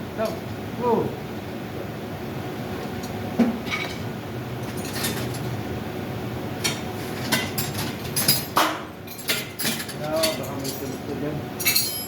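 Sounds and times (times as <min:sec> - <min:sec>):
steady low hum: 0:00.0 - 0:12.0
metallic clinks of tools: 0:09.1 - 0:12.0.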